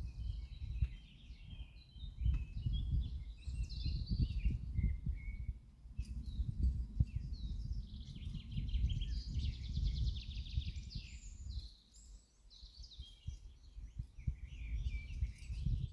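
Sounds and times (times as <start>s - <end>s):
songbirds singing: 0.0s - 15.9s
fast rattling bird trill: 13.0s - 15.9s.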